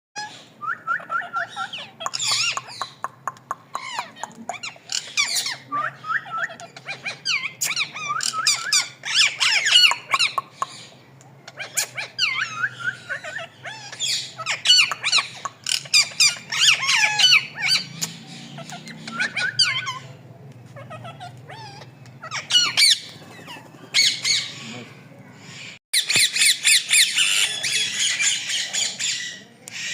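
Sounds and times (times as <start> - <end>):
parrot chirping and whistling: 5.1 - 10.4, 12.2 - 18.2, 18.8 - 20.0.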